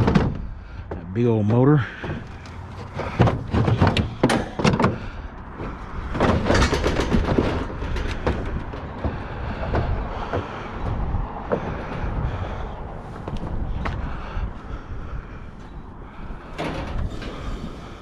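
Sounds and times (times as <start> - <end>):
scrap metal clattering: 1.8 - 13.3, 15.6 - 18.0.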